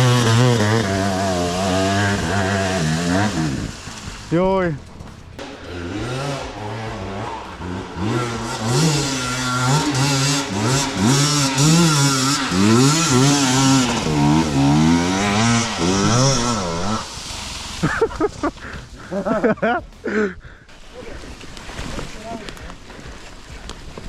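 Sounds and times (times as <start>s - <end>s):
motocross engine revving: 0.0s - 4.4s, 5.4s - 19.5s.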